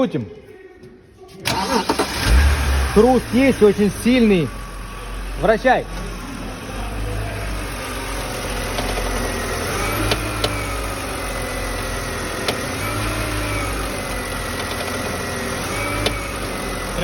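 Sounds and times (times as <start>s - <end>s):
car engine idling: 1.5s - 17.0s
steering whine: 1.5s - 17.0s
sharp steering clicks: 8.6s - 10.7s, 12.4s - 12.8s, 14.5s - 15.2s, 15.8s - 16.5s.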